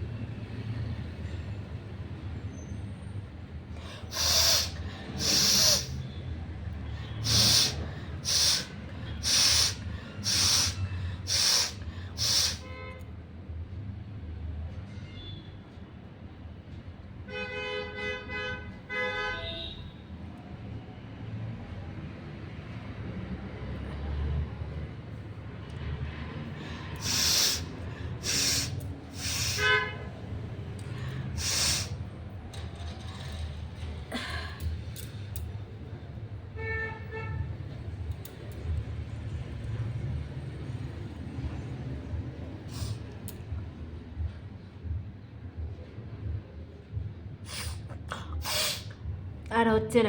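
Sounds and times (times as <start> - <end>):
person breathing hard through nose: 3.7 - 6.1, 6.7 - 12.7, 26.4 - 29.8, 30.8 - 32.1, 42.6 - 43.1, 47.4 - 49.0.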